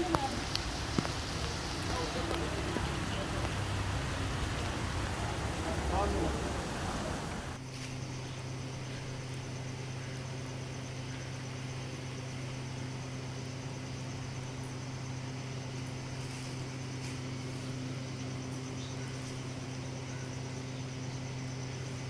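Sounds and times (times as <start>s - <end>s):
even hiss: 0.0s - 7.6s
low mechanical hum: 0.0s - 22.0s.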